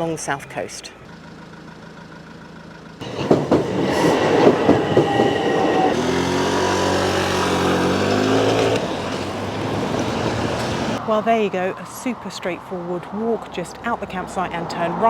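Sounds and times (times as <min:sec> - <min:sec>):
low train hum: 0:01.0 - 0:14.7
train wheels rushing and clicking: 0:03.0 - 0:11.0.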